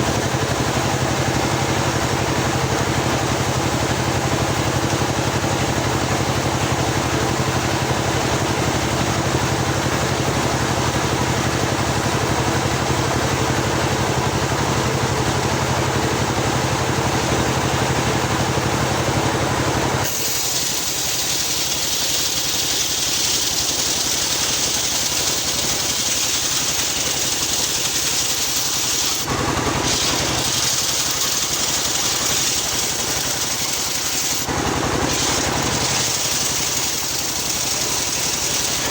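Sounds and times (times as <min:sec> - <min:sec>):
sawmill motor running: 0:00.0 - 0:38.9
saw blade hissing through wood: 0:20.0 - 0:38.9.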